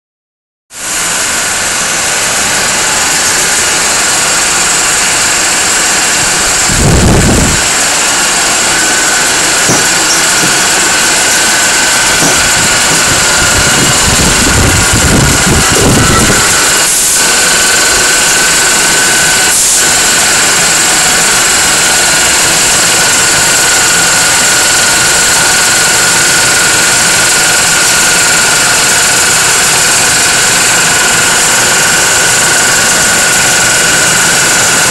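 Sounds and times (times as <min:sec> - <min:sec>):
air compressor running: 0:00.7 - 0:34.9
constant high whine: 0:00.7 - 0:34.9
diesel generator running: 0:00.7 - 0:34.9
low rumbles: 0:02.4 - 0:16.8.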